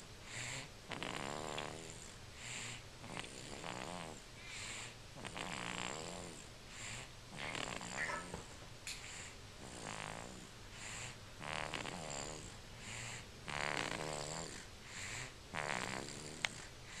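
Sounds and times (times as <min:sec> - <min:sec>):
baby snoring: 0:00.2 - 0:08.3, 0:09.0 - 0:17.0
soft breathing: 0:04.4 - 0:05.0, 0:14.8 - 0:15.4, 0:16.4 - 0:17.0.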